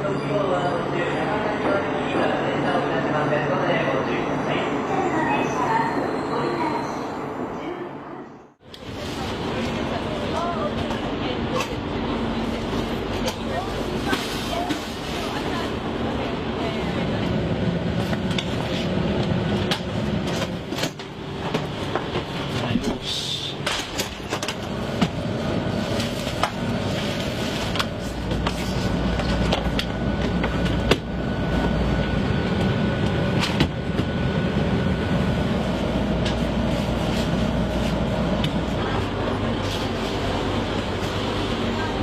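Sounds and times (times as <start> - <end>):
train mechanical hum: 8.6 - 42.0.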